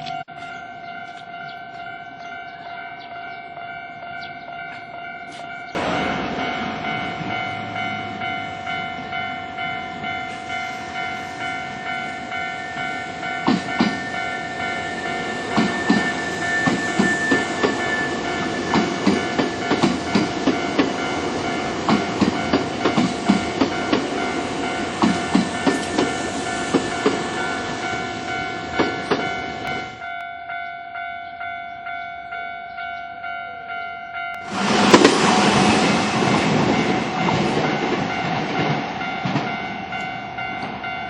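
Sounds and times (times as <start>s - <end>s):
level-crossing bell ringing: 0.0s - 34.7s, 36.1s - 41.0s
electric train passing: 0.0s - 41.0s
wheels clacking over rail joints: 13.2s - 30.0s.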